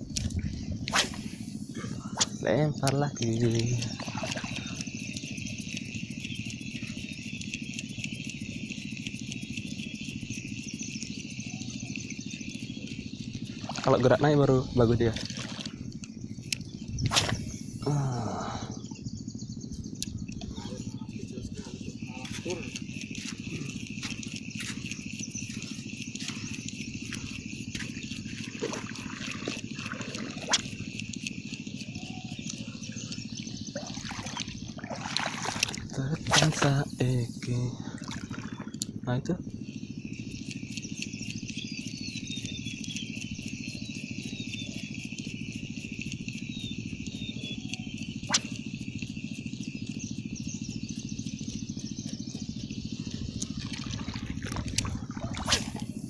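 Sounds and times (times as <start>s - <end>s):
high insect-like buzz: 0.0s - 56.0s
low fast-pulsing hum: 0.0s - 56.0s
motor idling: 0.0s - 56.0s
sharp click: 16.5s - 17.7s, 48.3s - 48.6s.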